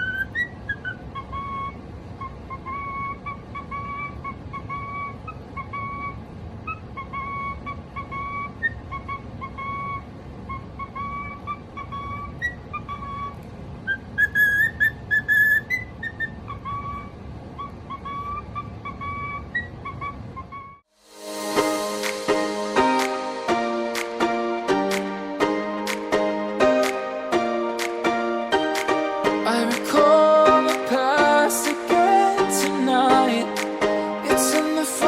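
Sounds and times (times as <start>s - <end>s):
cockatiel whistling a tune: 0.0s - 20.8s.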